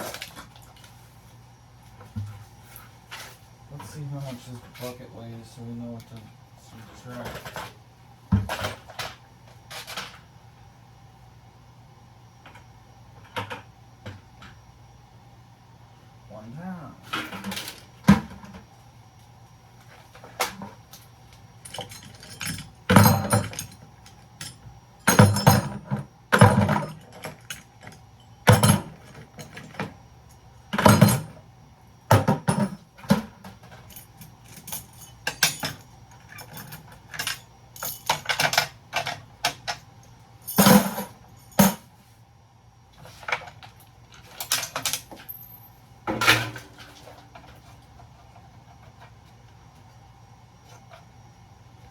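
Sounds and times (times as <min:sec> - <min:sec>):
faint steady hum: 0:00.0 - 0:51.9
metal scrap clanking: 0:46.1 - 0:47.1.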